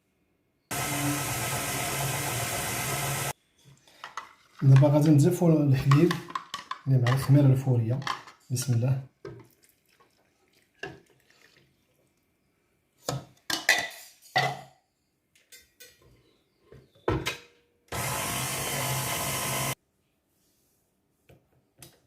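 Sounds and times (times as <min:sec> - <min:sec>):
electric mixer motor running: 0:00.7 - 0:03.3, 0:17.9 - 0:19.8.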